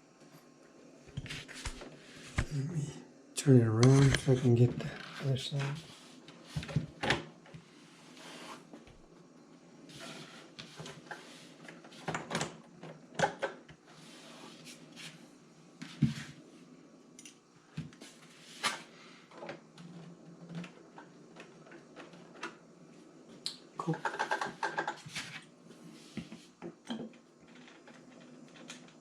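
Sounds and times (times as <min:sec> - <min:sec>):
soft rubbing and shuffling: 0:01.2 - 0:02.6, 0:13.8 - 0:16.8, 0:25.1 - 0:26.6
toy truck knocking and clacking: 0:23.9 - 0:25.0.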